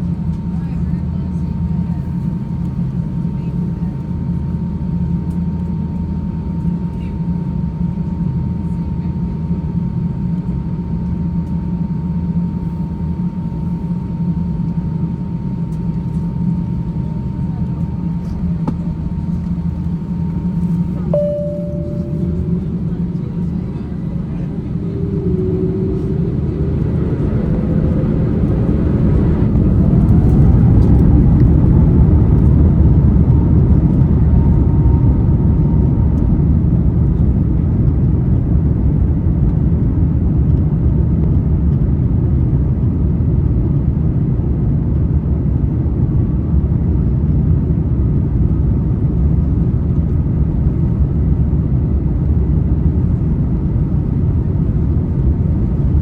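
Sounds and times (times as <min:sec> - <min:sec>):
loud jet rumble in cabin: 0:00.0 - 0:56.0
jet engines spooling up: 0:22.2 - 0:31.7.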